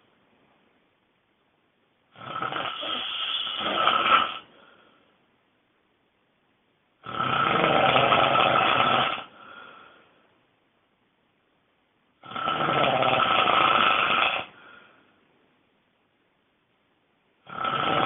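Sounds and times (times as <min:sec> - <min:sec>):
person snoring loudly: 0:02.1 - 0:04.5, 0:07.0 - 0:09.6, 0:12.2 - 0:14.6, 0:17.4 - 0:18.0.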